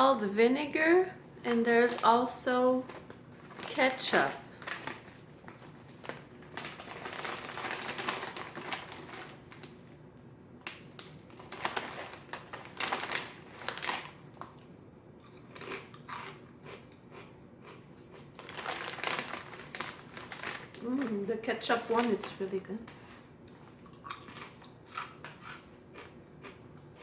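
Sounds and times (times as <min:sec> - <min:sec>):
chips being chewed: 0:11.0 - 0:21.1, 0:23.5 - 0:27.0.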